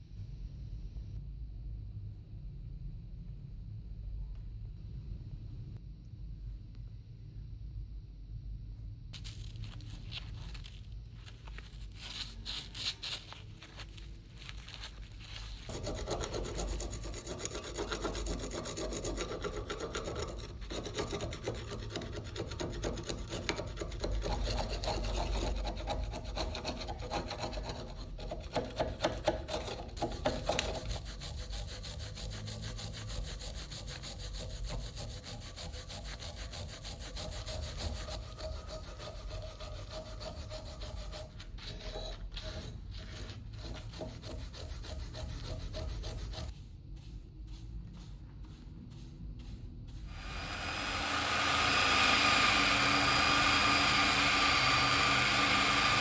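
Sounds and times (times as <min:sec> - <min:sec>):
hand tool scraping knife: 0:11.9 - 0:56.0.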